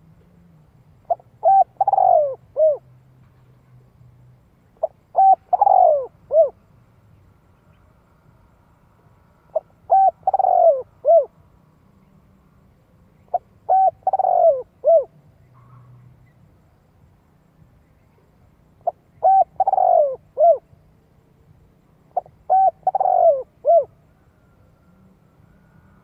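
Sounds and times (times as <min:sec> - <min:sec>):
dove cooing: 0:01.1 - 0:02.9, 0:04.8 - 0:06.6, 0:09.5 - 0:11.4, 0:13.3 - 0:15.9, 0:18.8 - 0:20.7, 0:22.1 - 0:24.0.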